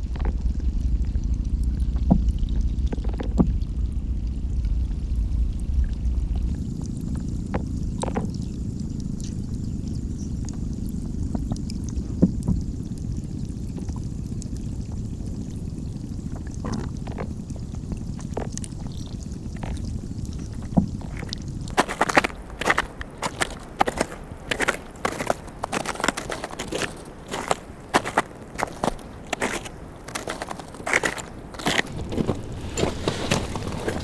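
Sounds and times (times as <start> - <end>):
running water rushing: 16.3 - 34.0.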